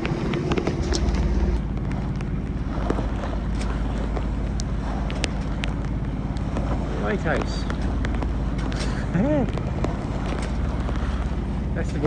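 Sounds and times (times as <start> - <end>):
wind and rain rushing: 0.0 - 1.8
boat engine running: 0.0 - 12.0.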